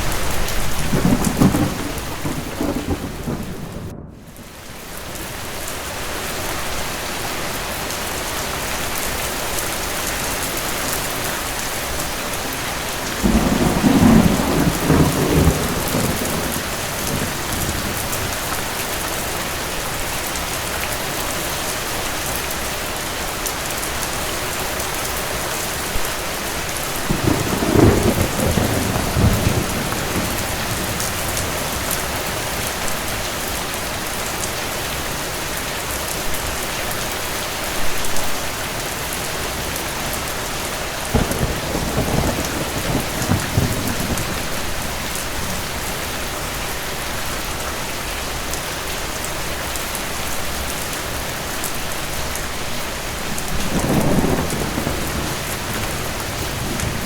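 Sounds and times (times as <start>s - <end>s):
distant thunder rumbling: 0.0s - 5.2s, 13.1s - 18.8s, 27.0s - 33.2s, 41.0s - 46.0s, 53.3s - 57.0s
heavy rain: 0.0s - 57.0s.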